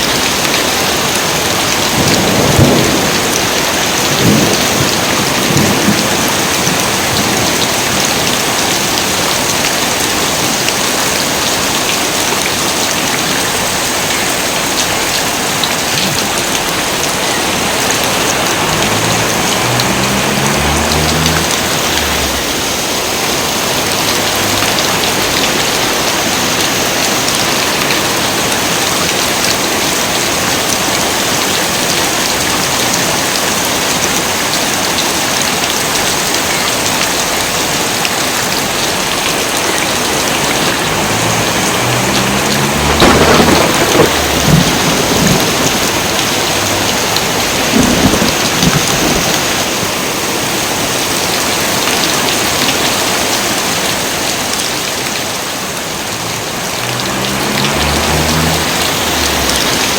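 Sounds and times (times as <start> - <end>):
heavy rain: 0.0 - 59.9
thunder rumbling and cracking: 1.0 - 10.5, 14.5 - 23.0, 40.0 - 50.0.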